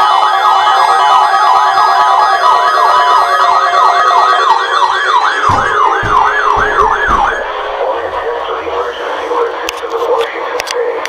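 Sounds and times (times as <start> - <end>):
warbling alarm: 0.1 - 9.6
low thumps: 5.4 - 9.0.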